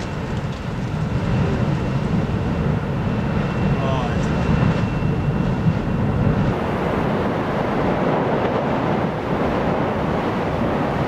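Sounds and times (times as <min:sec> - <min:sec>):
churning lava rushing: 0:00.0 - 0:11.0
wind buffeting microphone: 0:00.0 - 0:11.0.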